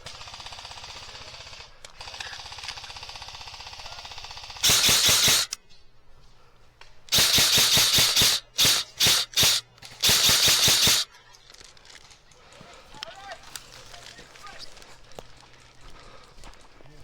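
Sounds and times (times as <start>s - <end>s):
airsoft gun automatic bursts: 0.0s - 5.6s, 7.1s - 11.1s
distant airsoft fire rattle: 0.1s - 5.7s, 7.1s - 11.6s.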